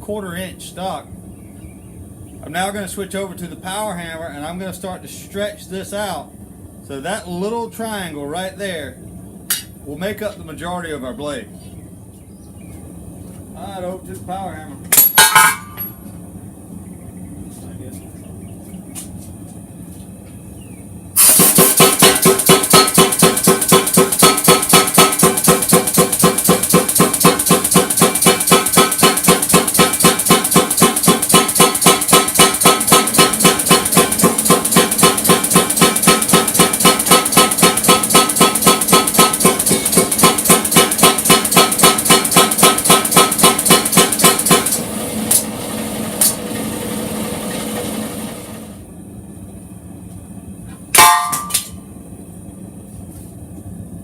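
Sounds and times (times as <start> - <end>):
short metal clanks: 14.9 - 16.1, 50.9 - 51.8
power hammer pounding metal: 21.2 - 45.5, 50.9 - 51.7
power hammer running: 21.2 - 48.8.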